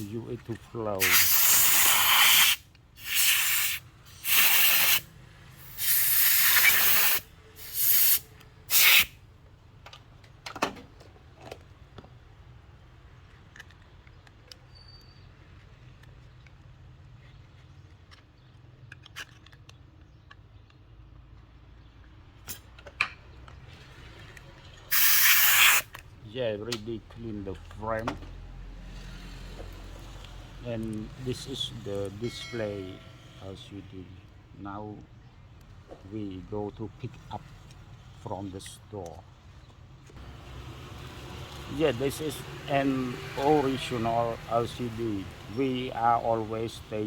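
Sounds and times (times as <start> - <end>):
compressed air blasts: 1.0 - 9.1, 24.9 - 25.9
small clicks and taps of handling: 9.8 - 12.2, 13.2 - 14.7, 15.5 - 24.5.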